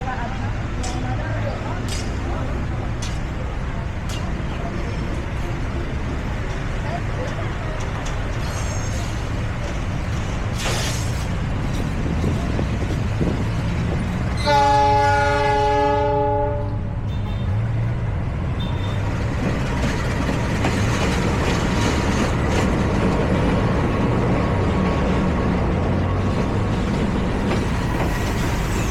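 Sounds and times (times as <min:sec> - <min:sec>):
train rumbling on rails: 0:00.0 - 0:28.9
locomotive horn blast: 0:14.4 - 0:17.6.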